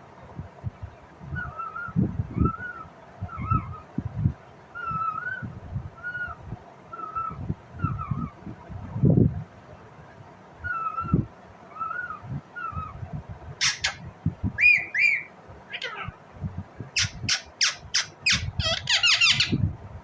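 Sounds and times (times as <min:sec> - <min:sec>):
parakeet squawking: 0:13.6 - 0:14.0, 0:14.6 - 0:16.2, 0:17.0 - 0:19.6.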